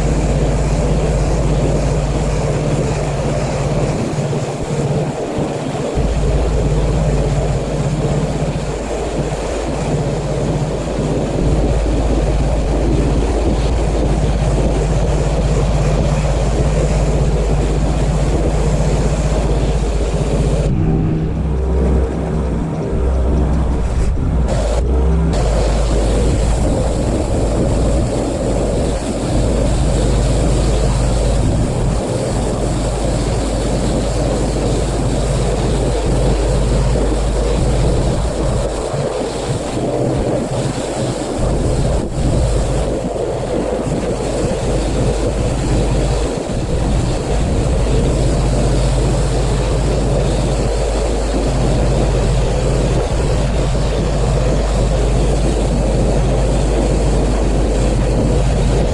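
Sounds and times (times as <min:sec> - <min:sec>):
pressure washer motor drone: 0:00.0 - 0:43.2
water jet hissing: 0:24.5 - 0:58.9.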